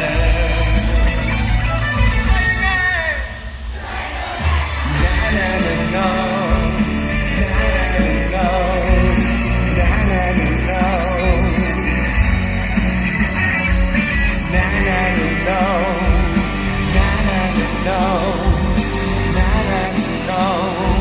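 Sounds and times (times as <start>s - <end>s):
live band playing pop-rock: 0.0s - 3.7s, 4.4s - 21.0s.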